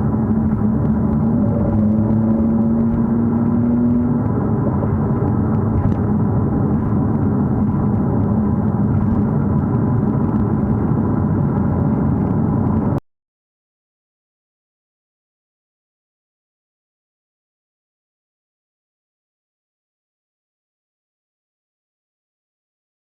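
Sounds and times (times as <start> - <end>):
car engine humming: 0.0 - 13.0.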